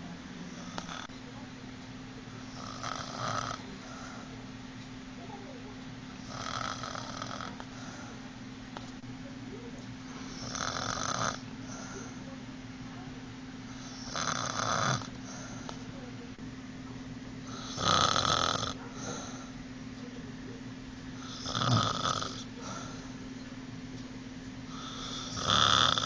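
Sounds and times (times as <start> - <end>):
woman snoring loudly: 0.6 - 1.1, 2.4 - 4.1, 6.2 - 7.7, 10.2 - 12.2, 13.8 - 15.4, 17.5 - 19.5, 21.2 - 23.0, 24.7 - 26.0
soft breath: 3.6 - 4.5, 7.5 - 8.4, 11.6 - 12.4, 15.1 - 16.1, 18.8 - 19.6, 22.4 - 23.3.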